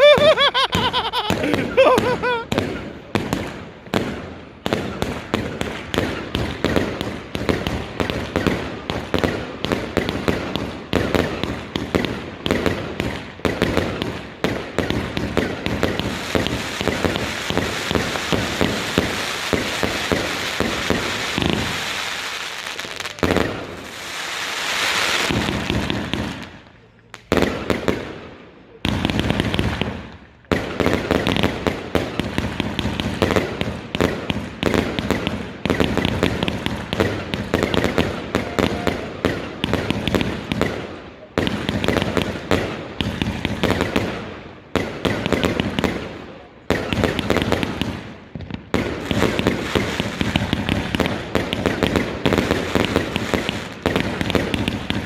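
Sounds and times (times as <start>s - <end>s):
fireworks cracking and banging: 0.0s - 55.0s
fireworks hissing: 15.3s - 26.6s.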